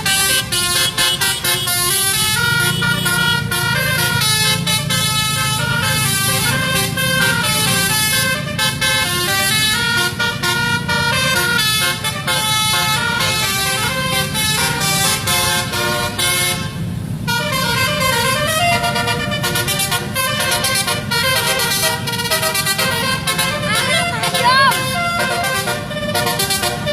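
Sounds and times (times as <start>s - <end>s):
bus engine humming: 0.0s - 26.9s
bus horn playing a melody: 0.0s - 26.9s.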